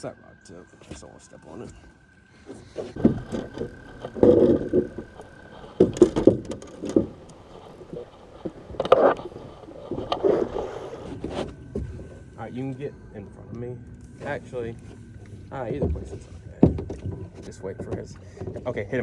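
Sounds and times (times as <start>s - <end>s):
thumps and knocks in boat: 2.5s - 12.5s, 15.1s - 19.0s.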